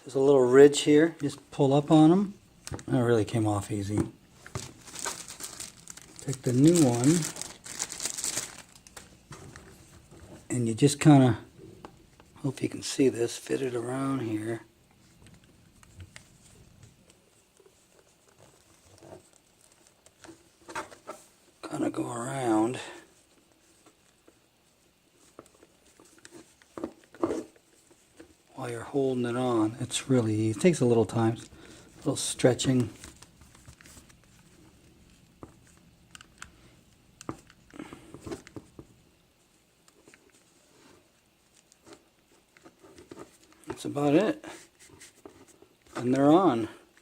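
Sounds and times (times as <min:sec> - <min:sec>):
ear pad handling clicks and rustles: 0:15.0 - 0:21.2, 0:25.2 - 0:28.5, 0:30.5 - 0:39.0, 0:41.5 - 0:43.9.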